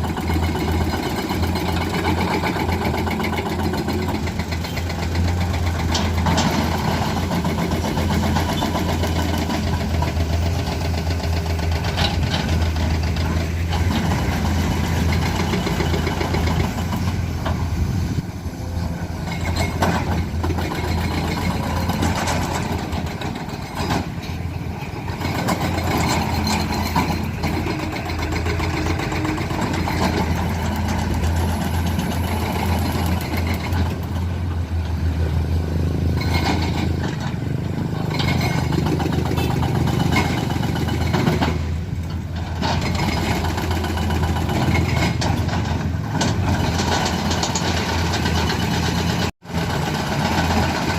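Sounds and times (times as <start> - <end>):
heavy diesel engine running: 0.0 - 50.9
clanks and knocks: 19.2 - 35.0, 36.1 - 49.3.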